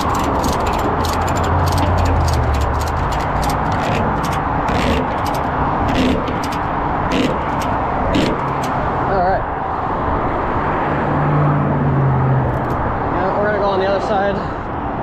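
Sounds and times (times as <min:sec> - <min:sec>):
sharp clicks and rattles: 0:00.0 - 0:09.2
truck engine: 0:00.0 - 0:10.0
road noise: 0:00.0 - 0:15.0.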